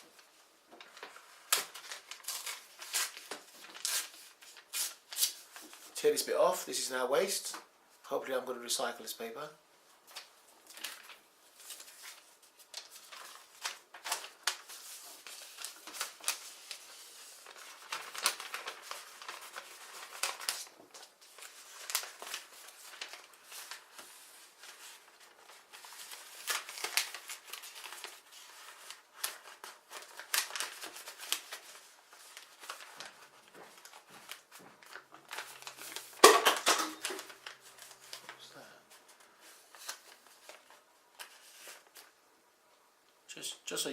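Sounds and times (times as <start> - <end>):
paper crinkling and creasing: 0.0 - 7.6, 10.0 - 42.4.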